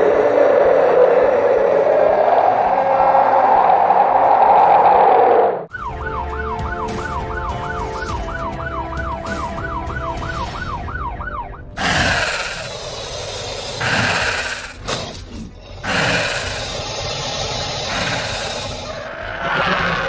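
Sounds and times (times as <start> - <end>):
siren yelping: 5.1 - 11.8.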